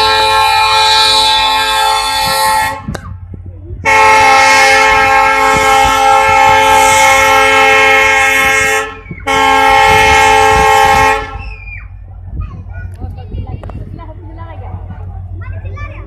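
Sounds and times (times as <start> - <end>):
locomotive air horn blasts: 0.0 - 3.0, 3.8 - 11.6.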